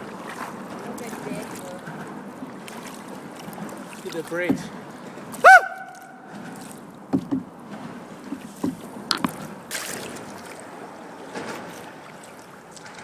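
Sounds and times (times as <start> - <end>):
paddle splashing in water: 0.0 - 13.0
light knocks: 4.4 - 4.7, 7.1 - 7.5.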